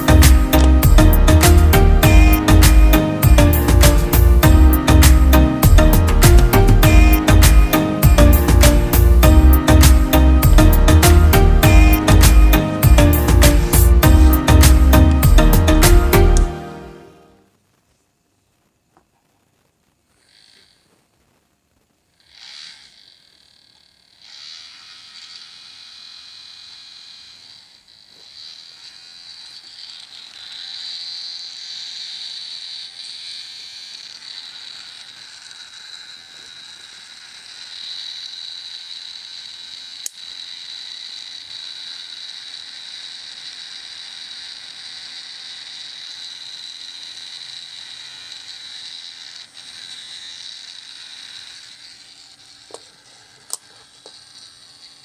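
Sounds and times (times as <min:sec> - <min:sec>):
sharp click: 0:00.0 - 0:16.6
small fan rattly whir: 0:22.1 - 0:55.0.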